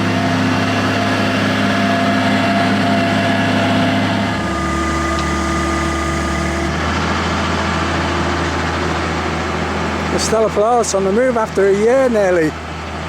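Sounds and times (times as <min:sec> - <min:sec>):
engine running: 0:00.0 - 0:11.1.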